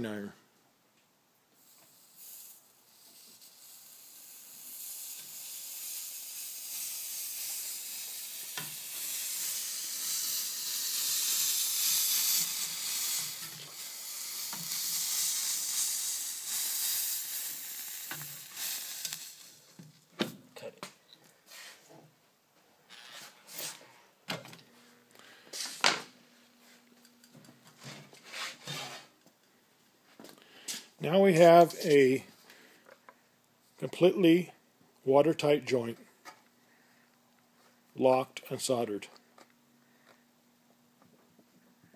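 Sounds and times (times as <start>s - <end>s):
flux sizzling under soldering iron: 1.6s - 19.8s.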